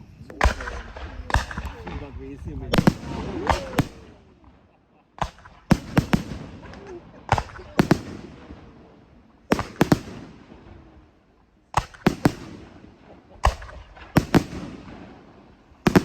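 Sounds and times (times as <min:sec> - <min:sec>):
firework shells bursting: 0:05.2 - 0:16.0.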